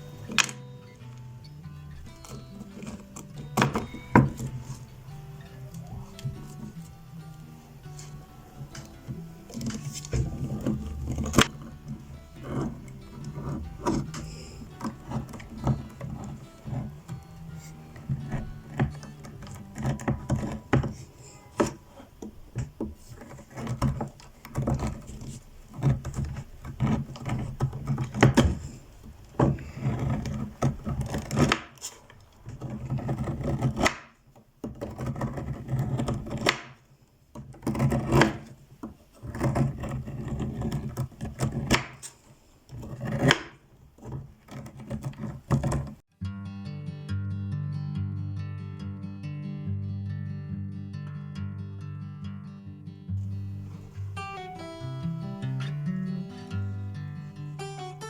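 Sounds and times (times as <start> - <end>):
rubbing of handled objects: 0.0 - 46.0.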